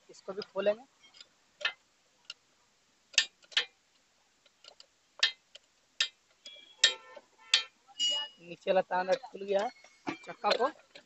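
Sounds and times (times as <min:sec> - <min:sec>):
spanner clicking on metal nut: 0:03.1 - 0:03.7, 0:04.6 - 0:07.7.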